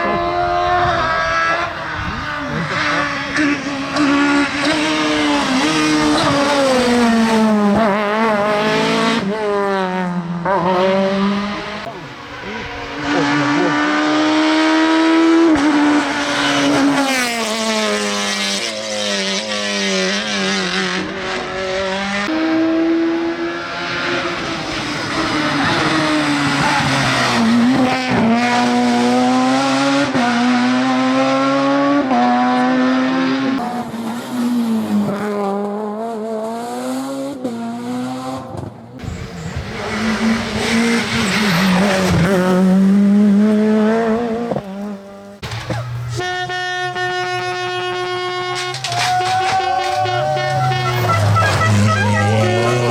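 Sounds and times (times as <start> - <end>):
rally car engine at full throttle: 0.0 - 52.9
tyre squeal: 48.4 - 52.9.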